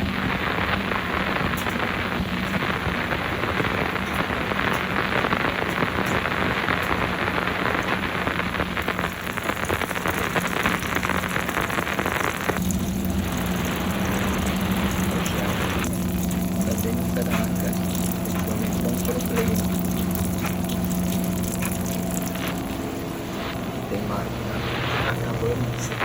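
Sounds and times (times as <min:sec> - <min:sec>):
washing machine motor hum: 0:00.0 - 0:26.0
water rushing in washing machine: 0:08.8 - 0:24.1.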